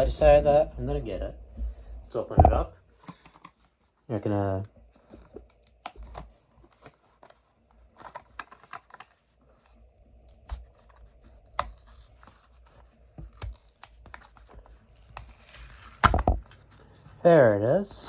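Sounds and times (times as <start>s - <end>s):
cardboard and plastic tearing: 5.3s - 9.4s, 10.3s - 18.0s.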